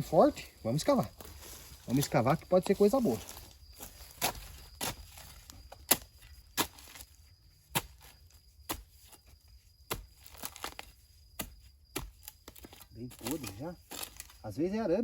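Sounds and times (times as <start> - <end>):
digging tool chopping into ground: 4.1 - 14.4.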